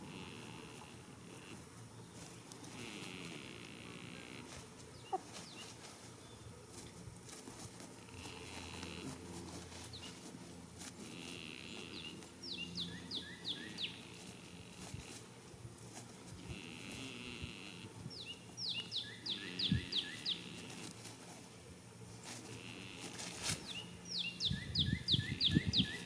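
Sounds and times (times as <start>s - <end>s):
goat snoring: 0.0s - 5.2s, 7.9s - 12.4s, 13.5s - 18.1s, 19.2s - 21.5s, 22.2s - 23.4s
bird chirping: 11.7s - 14.3s, 18.1s - 20.6s, 23.6s - 26.0s.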